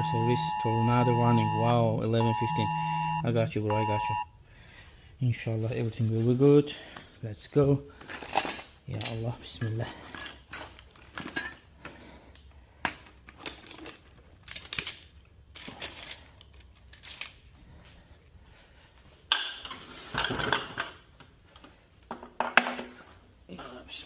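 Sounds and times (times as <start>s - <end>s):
metal tools clinking: 8.0s - 11.7s, 13.3s - 17.6s.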